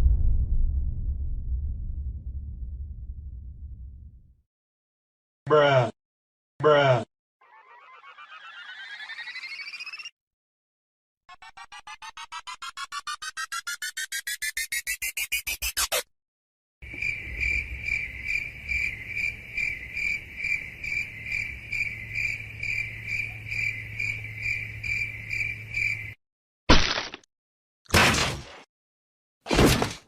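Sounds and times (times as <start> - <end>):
low hum: 0.0 - 4.3
crickets chirping: 16.8 - 26.2.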